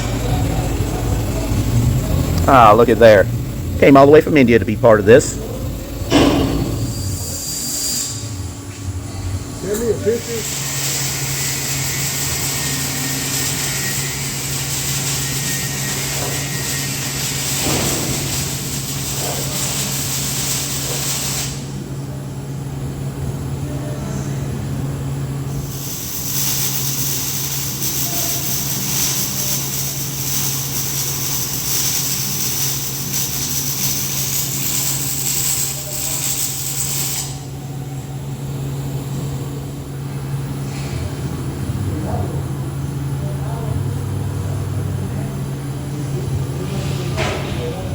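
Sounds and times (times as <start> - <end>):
welding arc hissing: 0.0 - 8.4, 9.7 - 21.7, 25.5 - 37.6
welding machine humming: 0.0 - 21.7, 25.4 - 40.6.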